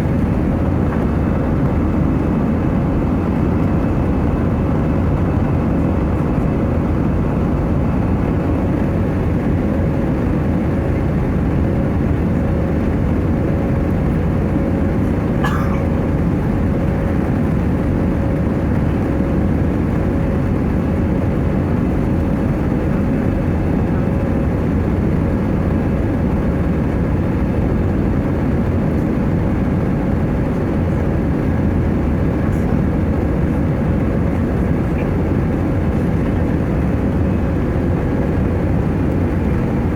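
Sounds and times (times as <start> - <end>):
jet engine and airflow rumble: 0.0 - 39.9
steady hum: 15.2 - 16.5.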